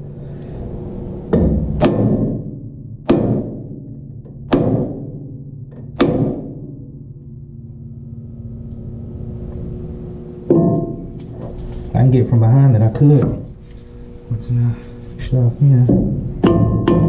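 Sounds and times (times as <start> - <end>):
sledgehammer ringing on steel: 10.5 - 11.2, 16.4 - 17.0.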